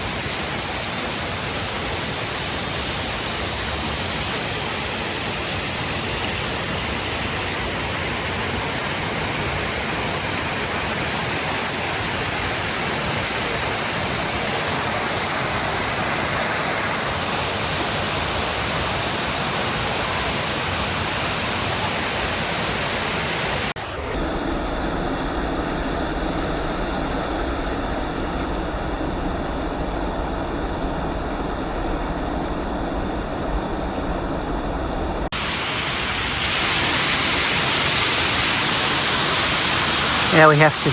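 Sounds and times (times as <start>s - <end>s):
waterfall rushing: 0.0s - 23.8s, 35.4s - 40.9s.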